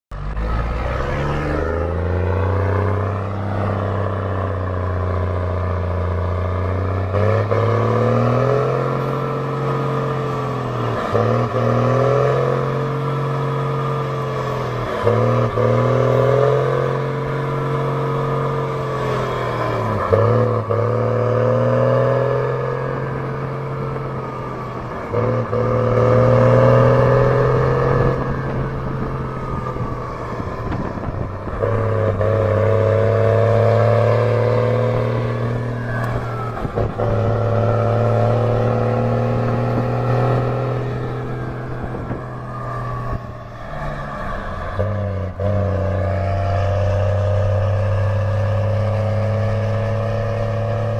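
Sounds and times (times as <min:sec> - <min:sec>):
diesel truck engine under load: 0:00.1 - 0:50.9
high tone gliding down: 0:00.1 - 0:50.9.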